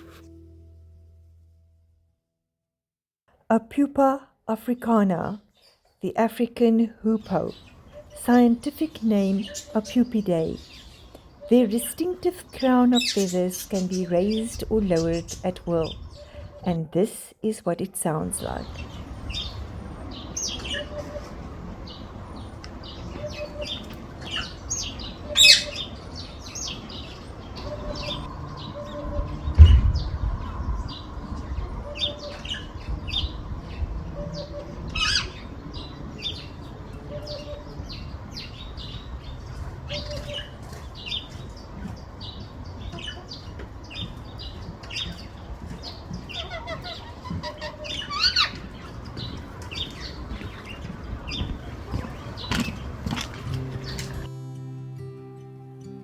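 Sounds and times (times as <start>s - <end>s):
garden birds chirping: 3.6s - 56.0s
loud low thump: 29.5s - 30.5s.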